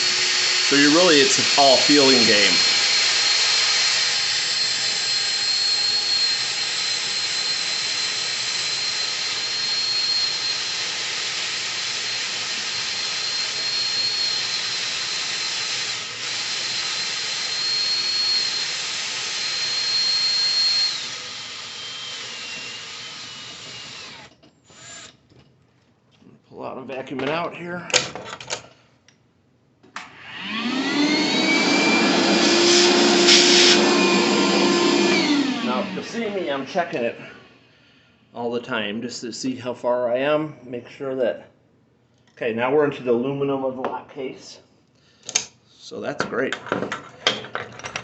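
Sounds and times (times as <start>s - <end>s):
electric drill boring into steel: 0.0s - 25.2s, 30.1s - 36.6s.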